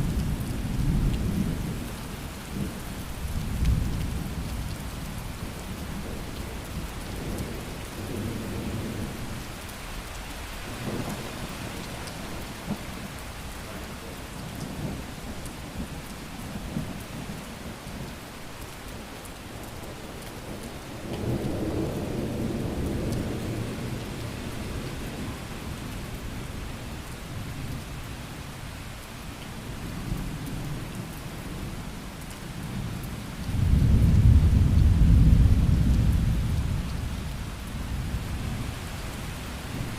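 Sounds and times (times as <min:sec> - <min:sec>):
steady rain: 0:00.0 - 0:39.9
rolling thunder: 0:33.5 - 0:38.5.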